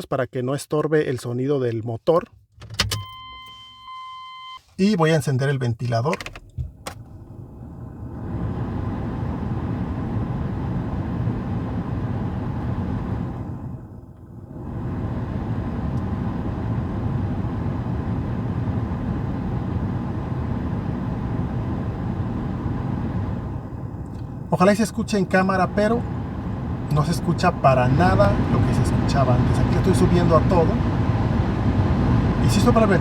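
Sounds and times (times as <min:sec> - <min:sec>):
blower fan rushing air: 0:07.3 - 0:33.0.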